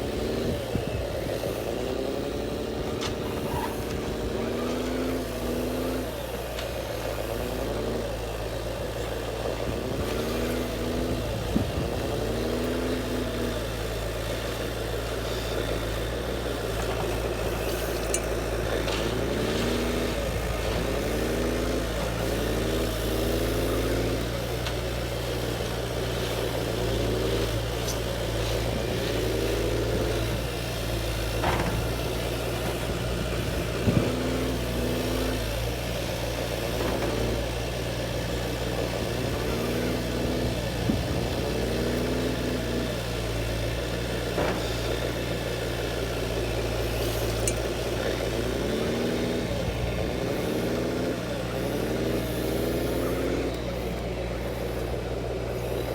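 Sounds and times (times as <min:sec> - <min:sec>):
motor humming: 0:00.0 - 0:55.9.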